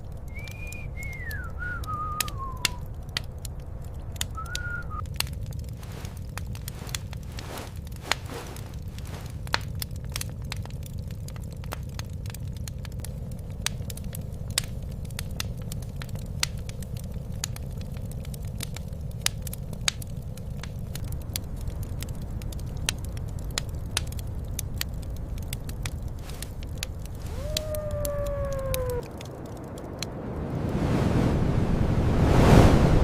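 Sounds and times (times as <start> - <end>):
wood fire crackling and popping: 0.0 - 30.9
falling tone: 27.2 - 29.1.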